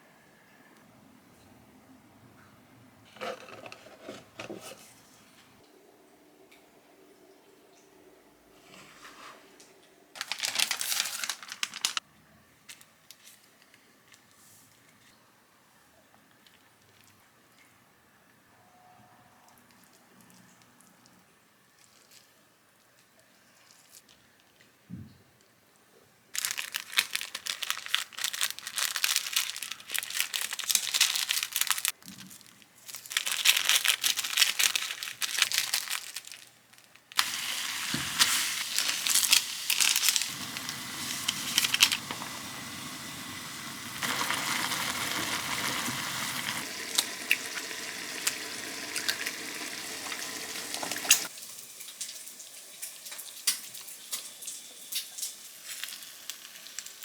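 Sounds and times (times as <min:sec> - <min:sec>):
food sizzling in a hot pan: 0:37.2 - 0:51.7, 0:54.9 - 0:57.0.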